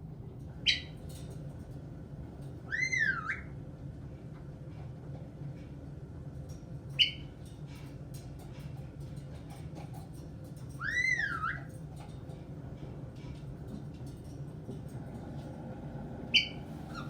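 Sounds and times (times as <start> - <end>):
parrot chirp: 0.6 - 1.0, 2.7 - 3.5, 10.8 - 11.7, 16.3 - 17.0.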